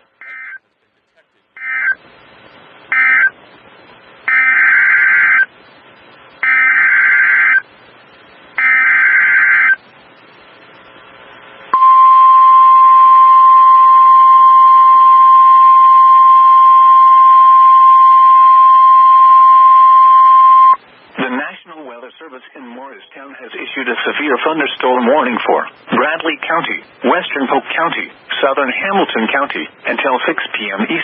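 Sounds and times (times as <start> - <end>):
steady warning alarm tone: 4.3 - 5.5, 6.4 - 7.6, 8.6 - 9.8, 11.8 - 20.8.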